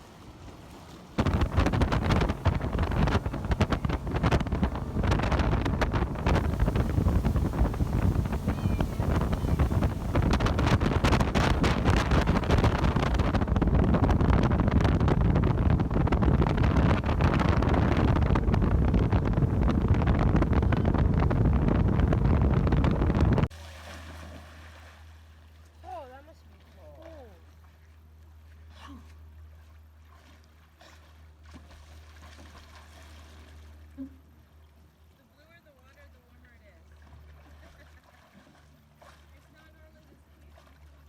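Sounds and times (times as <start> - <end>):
wind buffeting microphone: 1.2 - 23.5.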